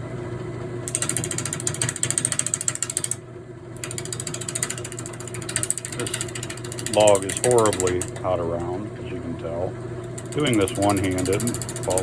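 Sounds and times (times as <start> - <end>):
lathe motor hum: 0.0 - 12.0
turning tool knocking on wood: 0.9 - 3.2, 3.8 - 8.9, 10.0 - 12.0.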